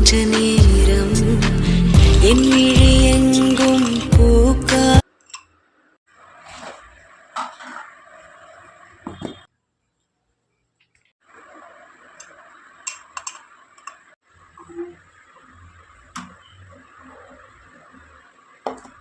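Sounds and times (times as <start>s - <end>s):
rain hiss: 11.2s - 19.0s.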